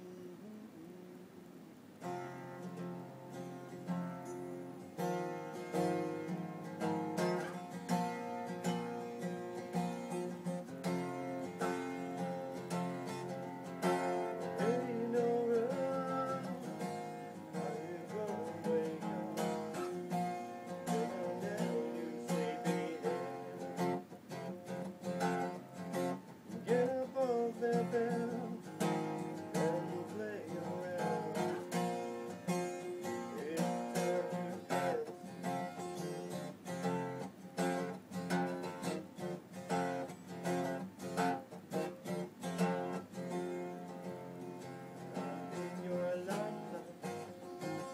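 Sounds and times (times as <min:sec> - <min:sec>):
person singing: 0:00.0 - 0:01.7, 0:13.0 - 0:24.0, 0:26.5 - 0:36.2, 0:45.0 - 0:47.9
acoustic guitar strumming: 0:01.7 - 0:47.9.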